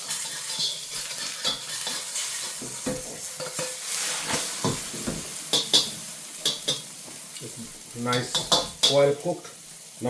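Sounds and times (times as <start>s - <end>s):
utensil scraping a pan: 0.0s - 6.8s
egg sizzling in a pan: 0.0s - 10.0s.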